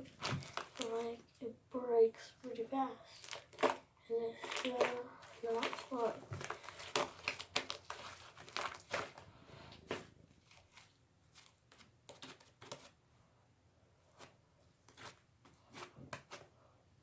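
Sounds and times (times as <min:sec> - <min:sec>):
slime container clicks and rustles: 0:03.2 - 0:03.8, 0:04.4 - 0:09.2.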